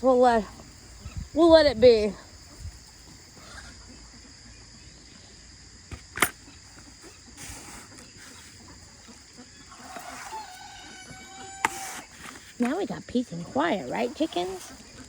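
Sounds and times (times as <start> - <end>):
insects chirring: 0.0 - 15.0
faint poultry calls: 2.5 - 5.5, 6.4 - 12.5
sharp click: 5.9 - 6.4.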